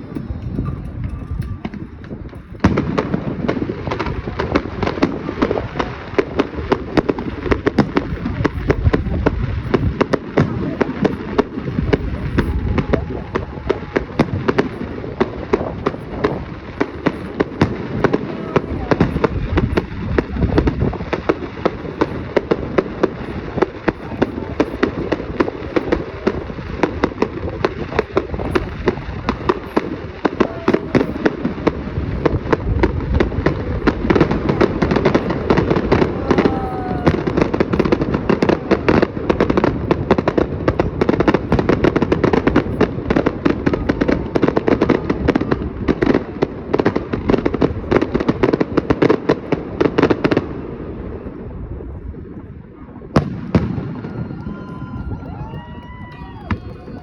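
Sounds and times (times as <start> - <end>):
fireworks bangs and crackles: 0.0 - 57.0.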